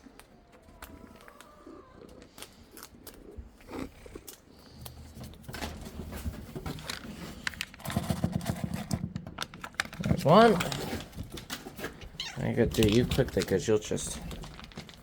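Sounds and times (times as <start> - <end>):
food packet crinkling: 6.7 - 15.0.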